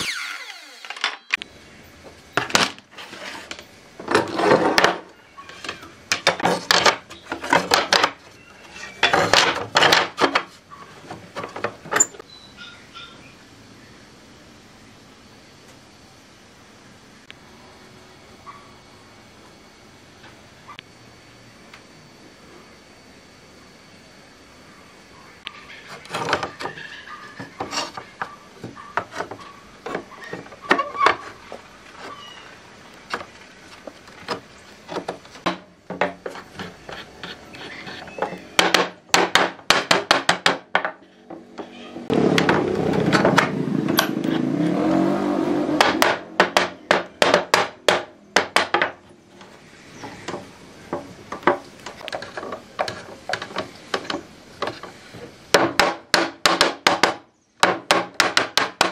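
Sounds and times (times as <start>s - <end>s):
dense steady noise: 1.3s - 26.4s, 27.0s - 58.9s.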